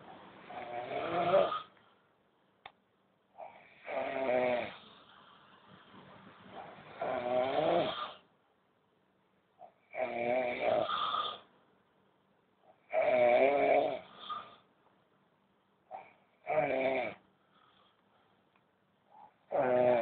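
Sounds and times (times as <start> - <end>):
man snoring: 0.5 - 1.7, 3.4 - 4.8, 6.9 - 8.2, 9.8 - 11.4, 12.8 - 14.6, 16.0 - 17.2, 19.5 - 20.0.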